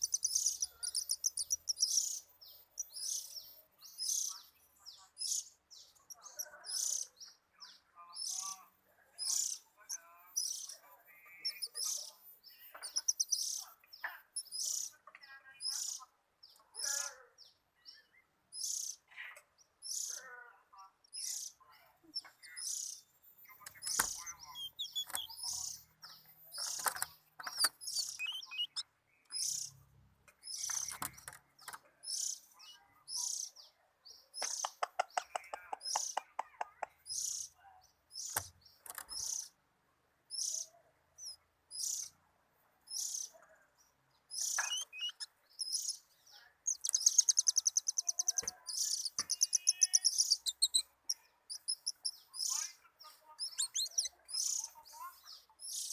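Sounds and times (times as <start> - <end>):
bird chirping: 0.0 - 55.9.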